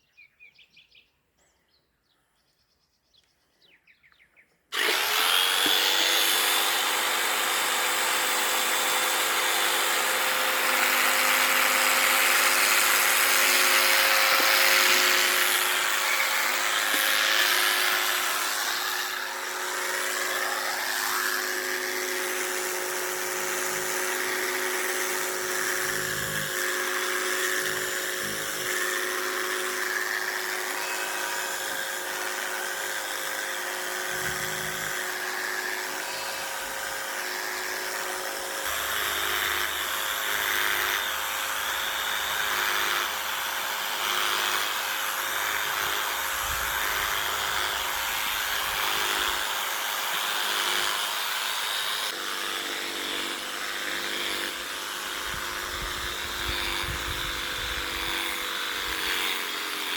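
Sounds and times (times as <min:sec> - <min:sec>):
electric clippers shearing wool: 0:04.7 - 0:59.9.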